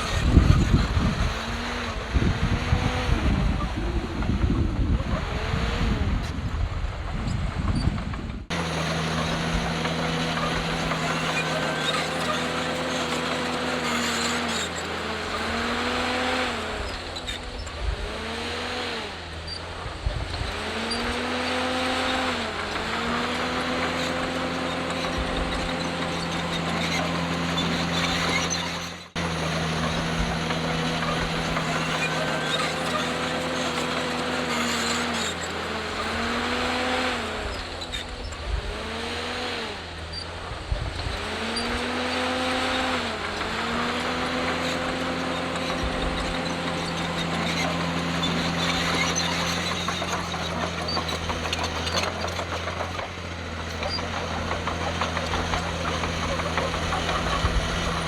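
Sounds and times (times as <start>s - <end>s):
wind buffeting microphone: 0.0s - 11.2s
heavy diesel engine running: 0.0s - 58.0s.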